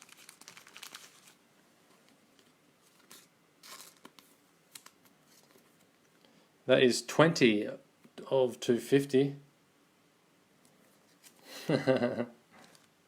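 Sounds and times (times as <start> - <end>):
card rustling in plastic sleeve: 0.0 - 1.4, 2.0 - 5.8.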